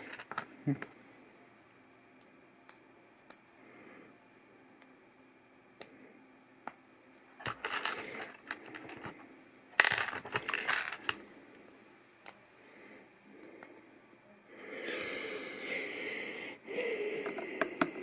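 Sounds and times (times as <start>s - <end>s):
plastic pieces rattling: 0.0s - 0.5s, 7.4s - 9.1s, 9.8s - 11.2s
plastic pieces clicking: 0.0s - 0.9s, 7.4s - 9.1s, 9.8s - 11.2s.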